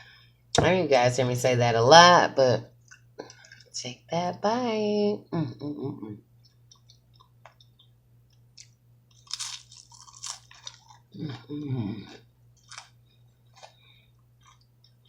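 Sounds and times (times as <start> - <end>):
person chewing and crunching food: 6.4 - 15.0.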